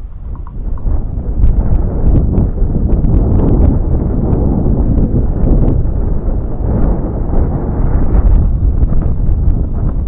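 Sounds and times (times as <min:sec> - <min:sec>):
gusty wind buffeting microphone: 0:00.0 - 0:10.0.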